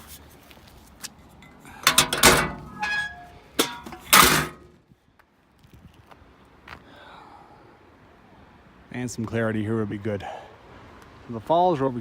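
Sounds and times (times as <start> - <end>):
metal cans clanking and rattling: 1.8 - 4.7.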